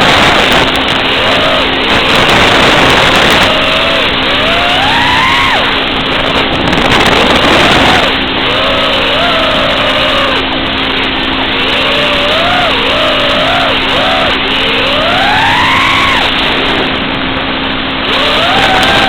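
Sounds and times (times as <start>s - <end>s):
drone motors whining: 0.0s - 19.0s
steady low hum: 0.0s - 19.0s.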